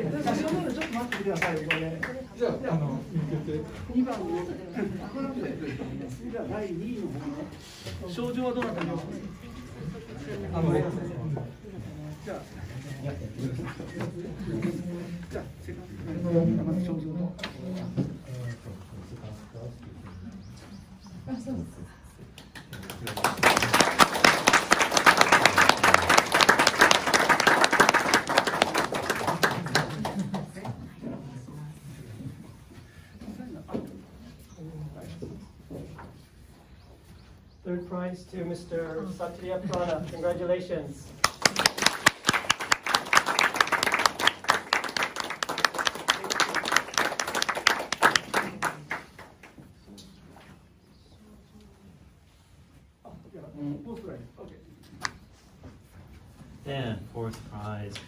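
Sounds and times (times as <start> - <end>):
audience applauding: 22.6 - 30.6, 41.2 - 49.5.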